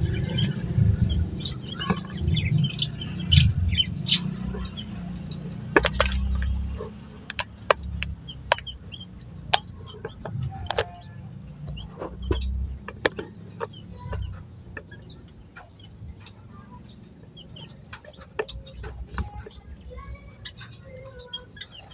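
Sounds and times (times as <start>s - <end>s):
birds clucking and chirping: 0.0s - 21.9s
sharp taps and clicks: 1.9s - 16.4s.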